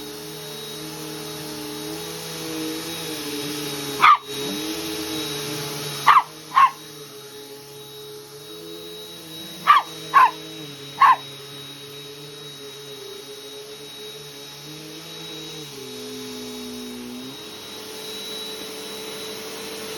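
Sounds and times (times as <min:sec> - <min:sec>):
vacuum cleaner motor hum: 0:00.0 - 0:19.9
dog barking: 0:04.0 - 0:04.5, 0:06.0 - 0:06.9, 0:09.6 - 0:10.4, 0:11.0 - 0:11.3.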